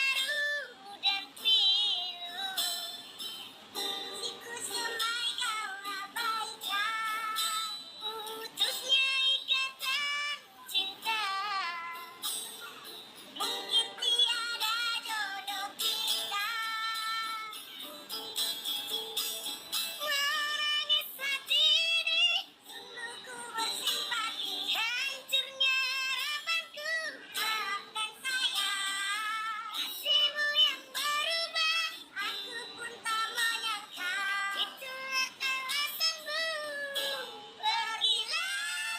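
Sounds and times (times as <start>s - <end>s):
high-pitched singing with vibrato: 0.0s - 38.9s
music: 0.0s - 38.9s.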